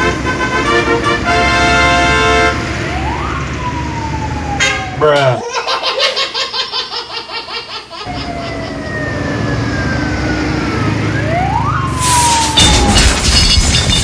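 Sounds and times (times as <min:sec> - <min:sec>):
low engine rumble: 0:00.0 - 0:05.0, 0:08.1 - 0:14.0
vehicle siren wailing: 0:00.0 - 0:05.4, 0:08.1 - 0:14.0.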